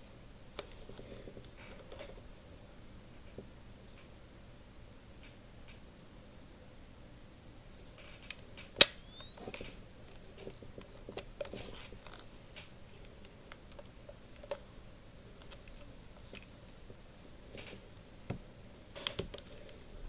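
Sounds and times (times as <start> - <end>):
camera flash charging whine: 0.0 - 13.7.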